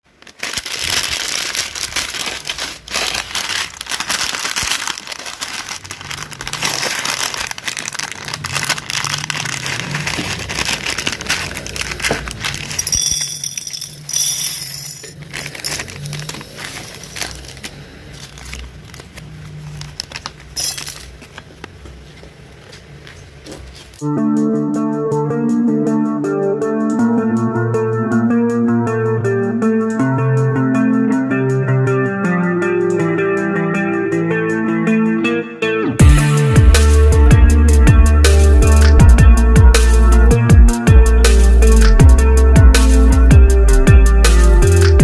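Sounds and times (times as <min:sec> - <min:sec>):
rummaging through plastic bricks: 0:00.0 - 0:21.5
plastic packaging crinkling: 0:00.0 - 0:24.0
plastic pieces clicking: 0:00.2 - 0:21.5.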